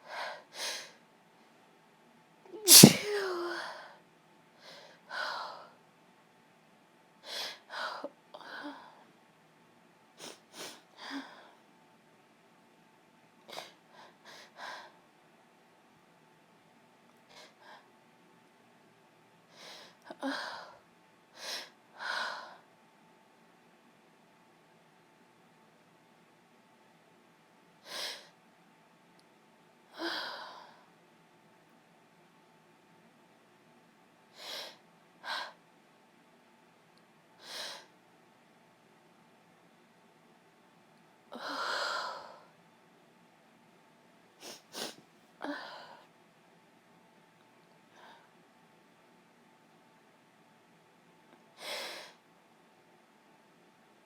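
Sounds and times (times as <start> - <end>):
woman sniffing stuffed nose: 2.7 - 3.5, 44.4 - 45.0
woman breathing: 2.7 - 3.8.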